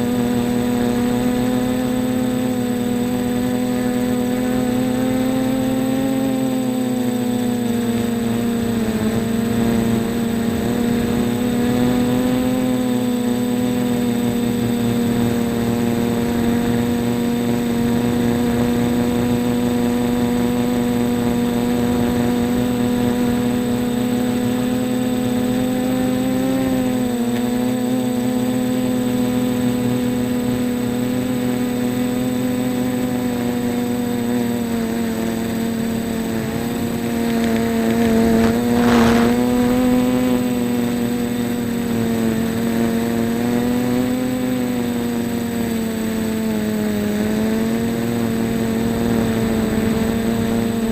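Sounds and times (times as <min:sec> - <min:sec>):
quadcopter propellers whining: 0:00.0 - 0:50.9.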